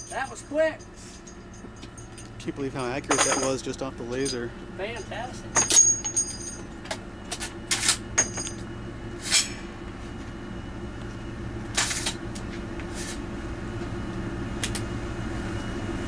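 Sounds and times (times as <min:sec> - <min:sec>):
metal clinking and rattling: 0:00.0 - 0:08.6
machine hum: 0:00.0 - 0:16.0.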